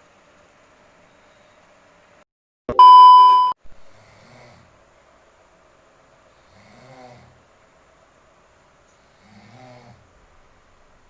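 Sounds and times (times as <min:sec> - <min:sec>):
high electronic bleep: 0:02.7 - 0:03.6
man snoring: 0:03.9 - 0:04.7, 0:06.4 - 0:07.4, 0:09.1 - 0:10.0.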